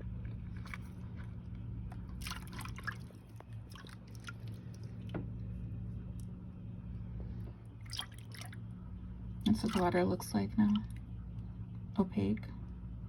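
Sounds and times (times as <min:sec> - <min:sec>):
steady low hum: 0:00.0 - 0:13.0
hand splashing in bath water: 0:07.8 - 0:08.5.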